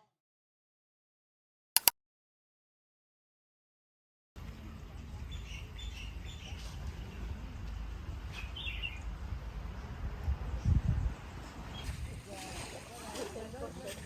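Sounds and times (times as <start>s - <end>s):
small birds chirping: 4.8s - 9.2s.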